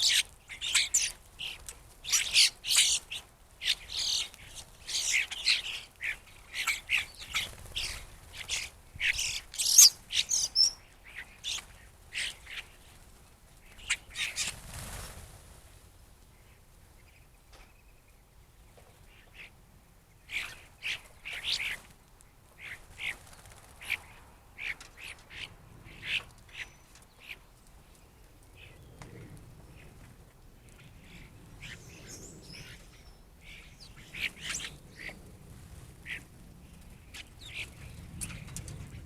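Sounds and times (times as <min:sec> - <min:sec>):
flock of birds calling: 0:00.0 - 0:12.7.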